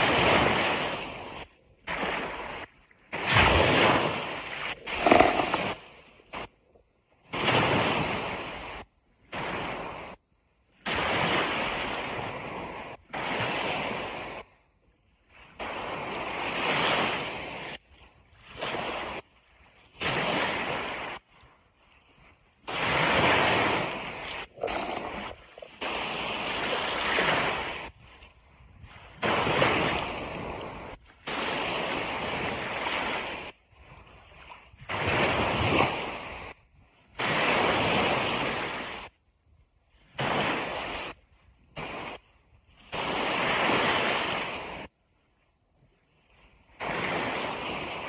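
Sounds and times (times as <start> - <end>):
ocean waves breaking on beach: 0.0 - 6.5, 7.3 - 14.5, 22.7 - 28.1, 42.9 - 44.9, 46.4 - 48.0.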